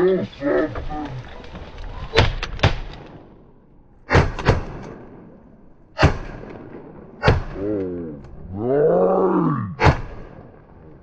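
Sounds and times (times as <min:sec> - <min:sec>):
shotgun blasts: 0:04.0 - 0:07.6, 0:09.8 - 0:10.6.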